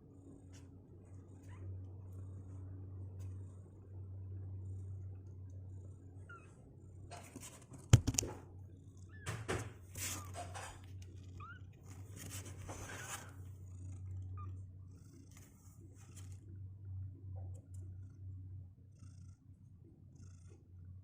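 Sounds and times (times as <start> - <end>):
steady low hum: 0.0 - 21.0
rustling and scratching: 7.0 - 8.6, 9.2 - 16.6.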